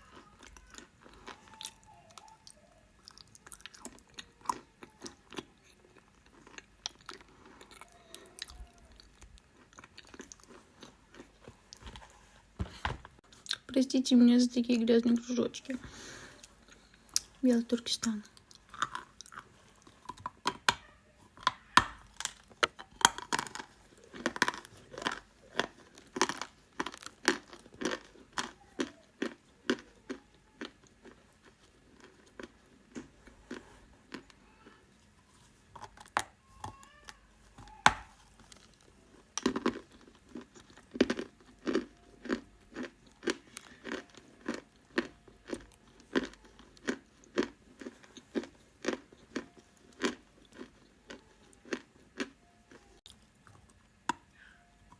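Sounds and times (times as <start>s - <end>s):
mouth crunching dry clay: 21.4s - 34.3s.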